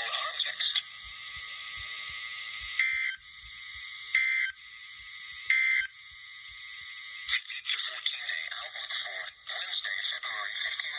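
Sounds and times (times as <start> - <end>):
radio hiss: 0.0 - 10.9
harsh digital data tone bursts: 2.2 - 6.0.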